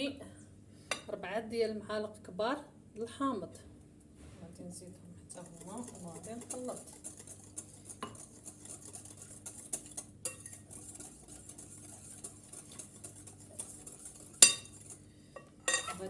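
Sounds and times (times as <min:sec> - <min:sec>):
whisk stirring batter: 0:05.2 - 0:16.0
whisk wires clicking on bowl: 0:05.3 - 0:16.0.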